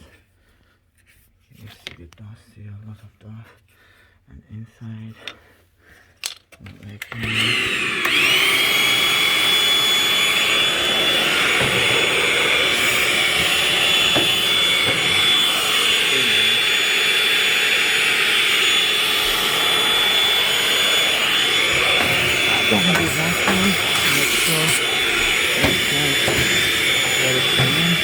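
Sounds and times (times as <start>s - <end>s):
vacuum cleaner motor whine: 7.0s - 28.0s.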